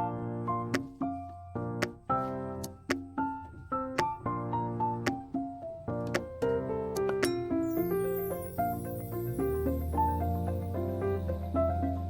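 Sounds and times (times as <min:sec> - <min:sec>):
mallet melody over bass: 0:07.2 - 0:12.0.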